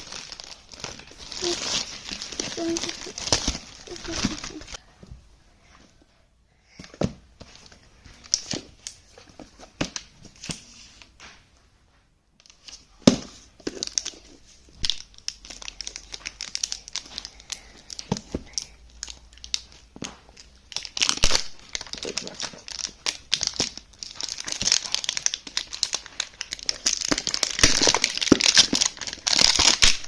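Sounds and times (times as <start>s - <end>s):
packaging crinkling and tearing: 0.0s - 4.8s, 13.6s - 30.0s.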